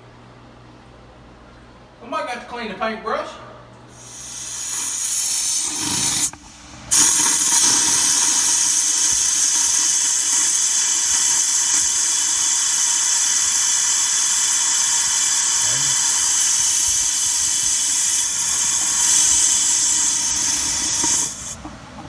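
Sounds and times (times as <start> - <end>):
water spraying hard: 4.0 - 21.6.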